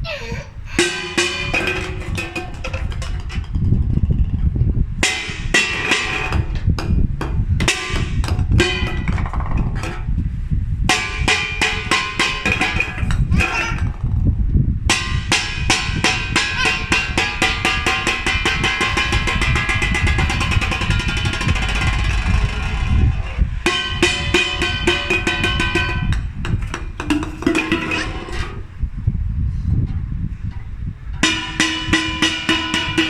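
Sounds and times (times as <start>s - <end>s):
golf balls clicking and clattering: 0.0s - 10.2s.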